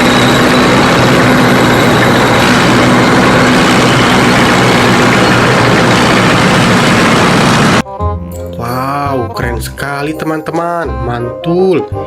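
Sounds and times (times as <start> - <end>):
tank engine droning: 0.0 - 7.8.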